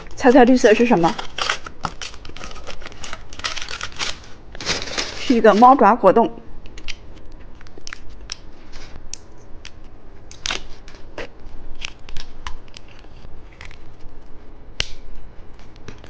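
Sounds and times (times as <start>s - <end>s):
plastic packaging crinkling: 0.0s - 5.8s.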